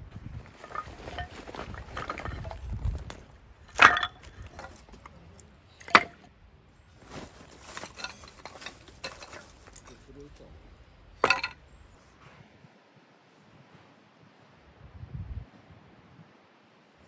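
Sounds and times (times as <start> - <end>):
light handling clatter: 0.1 - 6.3, 7.0 - 12.0.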